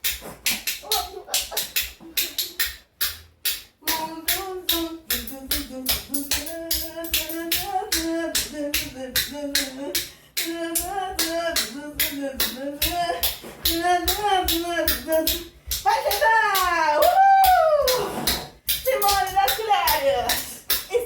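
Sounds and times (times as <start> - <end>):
spoons clacking in rhythm: 0.0 - 21.0
person singing: 3.8 - 18.2.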